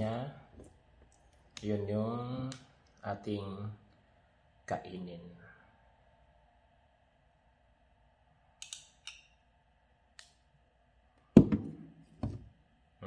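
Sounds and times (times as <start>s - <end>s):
loud knocks: 11.4s - 12.4s.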